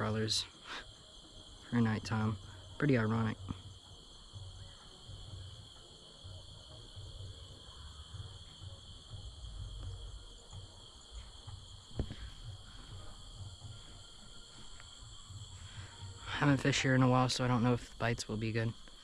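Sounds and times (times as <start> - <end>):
crickets chirping: 0.0 - 19.0.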